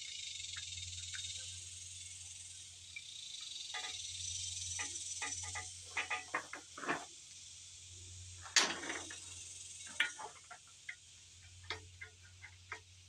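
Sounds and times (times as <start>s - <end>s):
insects buzzing: 0.0s - 13.0s
hand tools clinking on metal: 5.2s - 7.0s, 8.4s - 10.6s.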